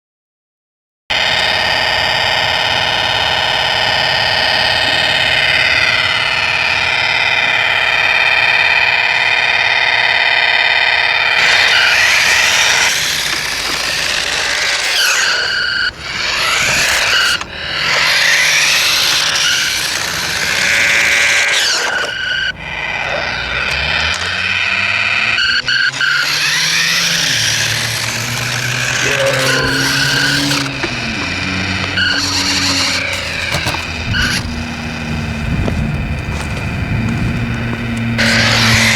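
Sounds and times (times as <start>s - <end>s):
warbling electronic buzz: 1.1s - 38.9s
harsh electronic sweeping effects: 11.3s - 35.5s, 37.4s - 38.9s.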